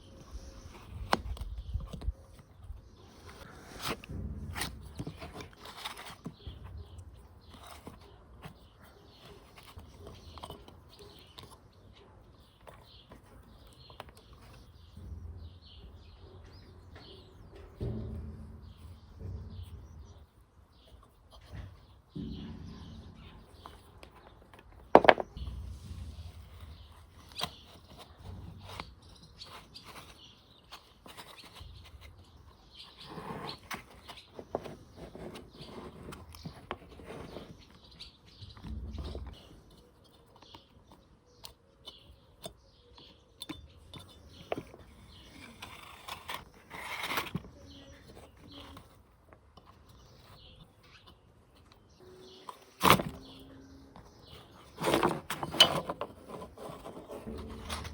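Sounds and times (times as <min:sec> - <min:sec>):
small birds chirping: 0:00.0 - 0:57.9
low rumble: 0:25.4 - 0:27.0.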